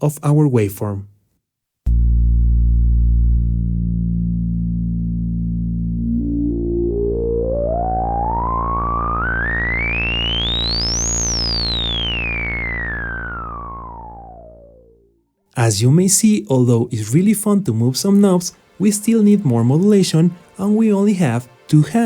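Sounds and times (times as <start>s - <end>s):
synthesizer low note with filter sweep: 1.9s - 15.4s.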